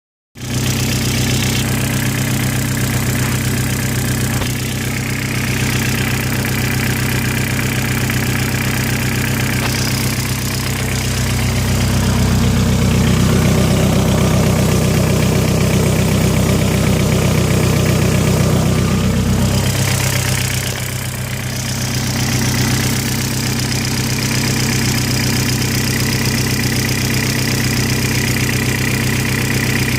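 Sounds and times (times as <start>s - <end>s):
engine idling with a knock: 0.4s - 18.9s.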